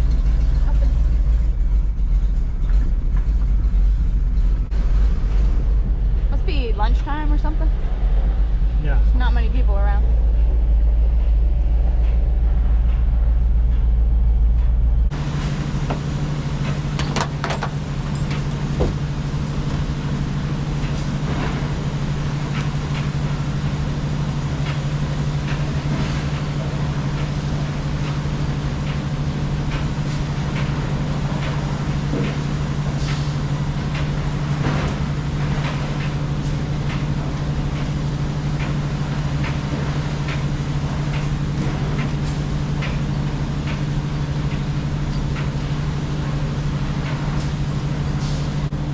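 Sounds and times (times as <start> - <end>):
vehicle engine running: 0.0 - 48.9
knocks and rattles: 15.8 - 23.4.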